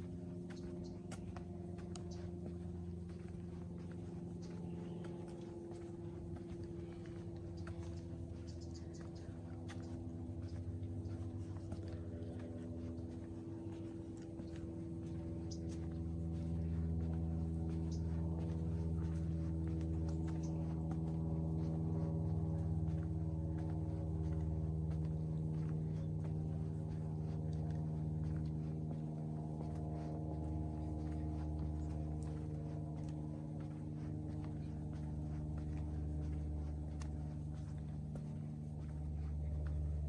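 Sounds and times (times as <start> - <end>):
faint footsteps: 0.0 - 40.0.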